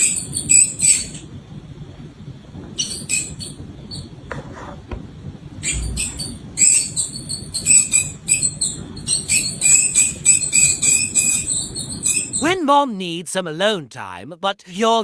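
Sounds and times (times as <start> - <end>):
mouse squeaking: 0.0 - 1.2, 2.8 - 4.1, 5.6 - 12.6.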